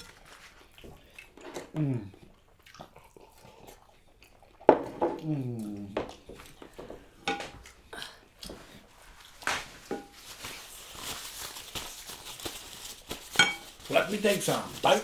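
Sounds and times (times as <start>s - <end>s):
chewing with smacks: 0.0s - 9.5s
soft rustling crunch: 8.5s - 15.0s.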